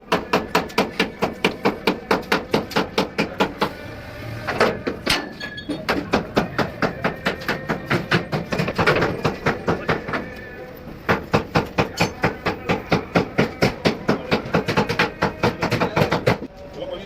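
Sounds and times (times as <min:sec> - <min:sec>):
hammer striking metal: 0:04.5 - 0:10.2, 0:11.1 - 0:16.5.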